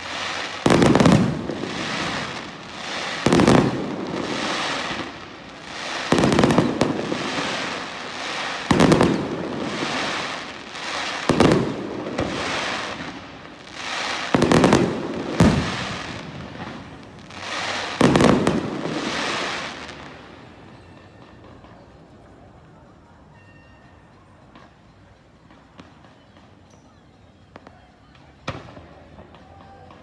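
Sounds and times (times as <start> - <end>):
firework hiss: 0.0 - 20.7
firework shells bursting: 0.0 - 20.9.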